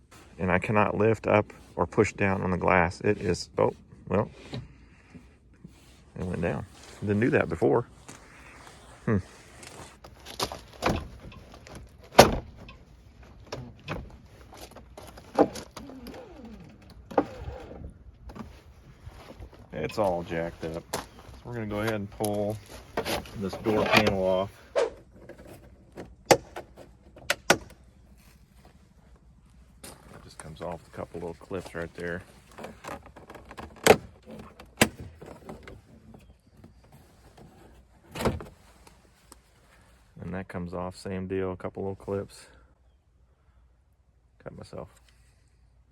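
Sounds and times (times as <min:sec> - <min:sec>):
plastic handling rustle: 0:05.7 - 0:27.2, 0:28.0 - 0:40.2.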